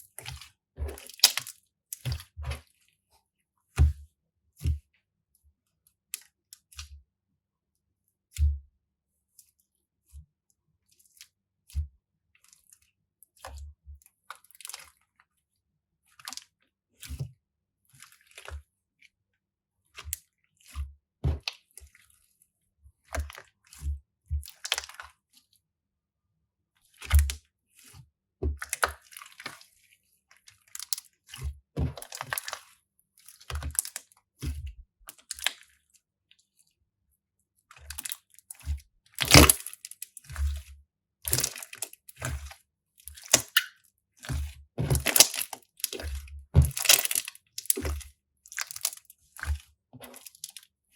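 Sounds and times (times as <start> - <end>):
slime crunching and squishing: 0.3 - 2.7, 31.8 - 32.8, 39.2 - 40.7, 41.3 - 42.5, 43.1 - 43.7, 44.3 - 50.6.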